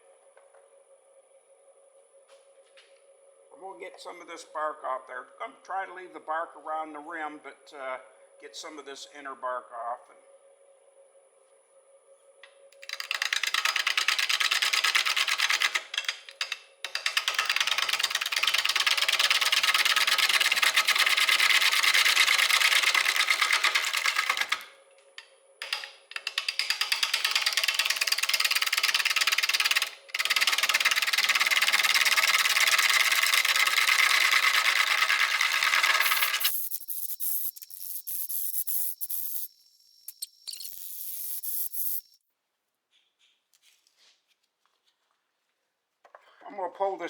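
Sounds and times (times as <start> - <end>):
lathe tool cutting wet wood: 19.2 - 24.6, 29.3 - 36.5.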